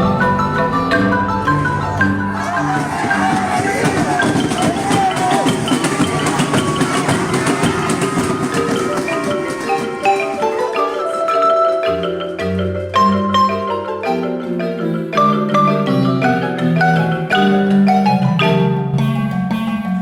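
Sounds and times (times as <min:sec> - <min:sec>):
marimba playing quick notes: 0:00.0 - 0:19.8.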